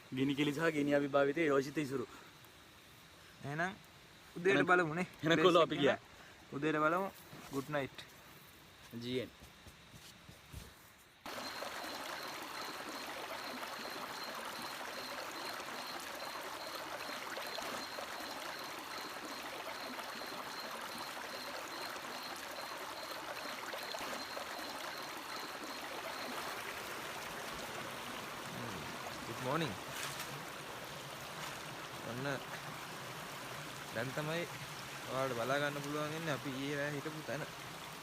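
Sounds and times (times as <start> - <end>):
faint high pulsing chirp: 11.2 - 26.6
river water flowing: 11.2 - 38.0.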